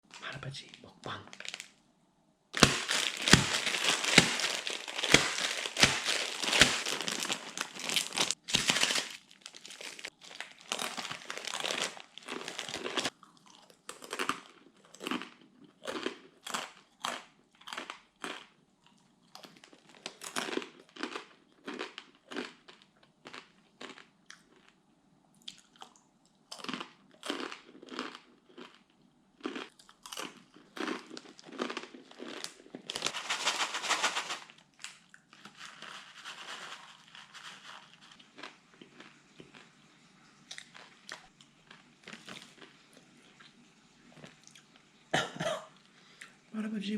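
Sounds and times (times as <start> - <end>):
crunching dry noodles: 2.6 - 24.8, 25.4 - 39.8, 40.4 - 43.5
crunchy bites and chews: 2.6 - 24.8, 25.4 - 33.2, 37.7 - 39.8.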